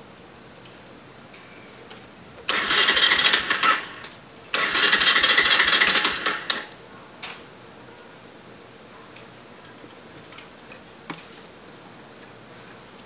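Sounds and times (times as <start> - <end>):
motorcycle electric starter cranking: 2.5 - 6.8.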